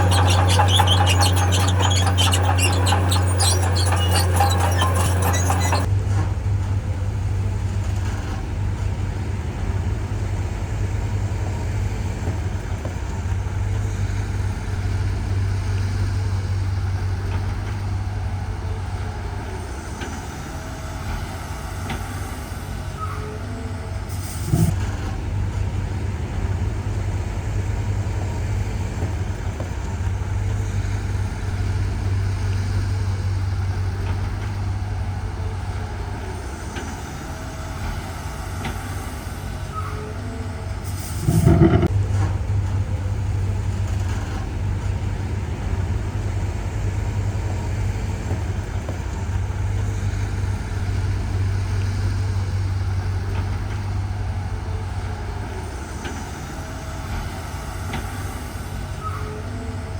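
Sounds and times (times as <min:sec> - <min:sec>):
diesel machinery droning: 0:00.0 - 0:07.7, 0:23.4 - 0:59.9.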